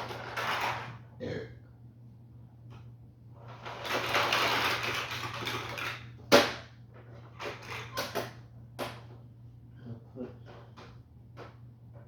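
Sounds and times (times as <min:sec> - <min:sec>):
toy blocks clattering: 0:03.7 - 0:06.0.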